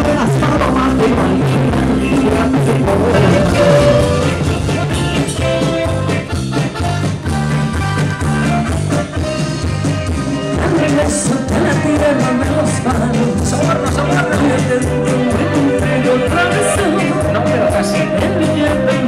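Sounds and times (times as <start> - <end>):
person singing: 0.0 - 5.8
upbeat band music: 0.0 - 19.0.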